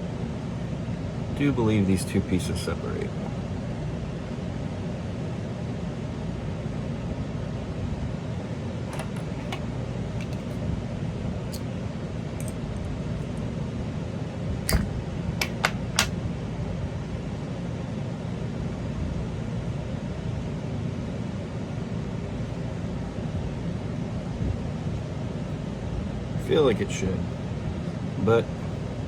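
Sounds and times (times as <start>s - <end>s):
steady background hum: 0.0s - 29.0s
clicks and taps of metal parts: 10.2s - 10.6s, 14.7s - 16.1s.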